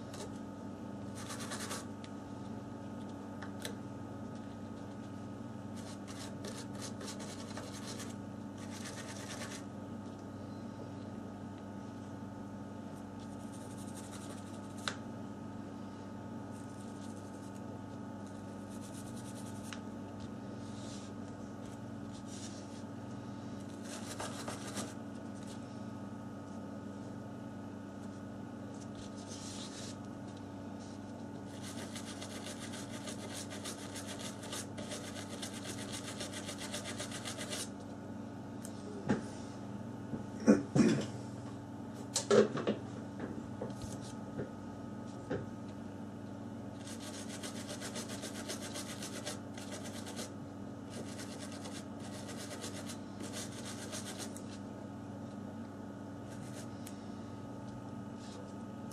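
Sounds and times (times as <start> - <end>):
electrical hum: 0.0 - 58.9
small brush scrubbing circuit board: 1.2 - 1.9, 5.8 - 9.6, 13.3 - 14.8, 18.4 - 19.8, 31.5 - 37.7, 46.8 - 50.3, 50.9 - 54.5.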